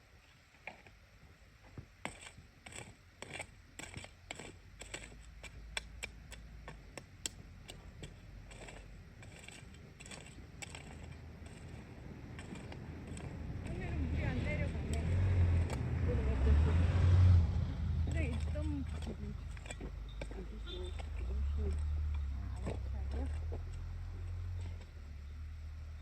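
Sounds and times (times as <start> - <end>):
light clicks and scrapes: 1.6 - 15.9, 18.0 - 25.1
low rumble: 11.0 - 26.0.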